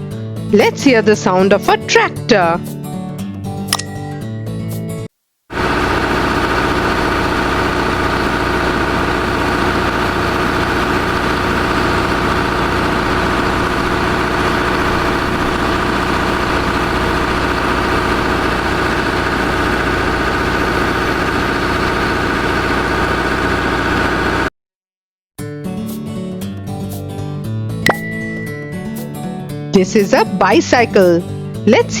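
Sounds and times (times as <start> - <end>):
tractor engine running: 5.5 - 24.5.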